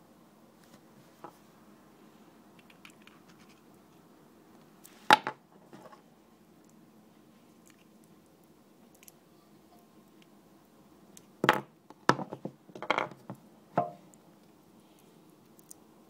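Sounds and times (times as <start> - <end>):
clicks and scratches of handling: 2.5 - 4.0.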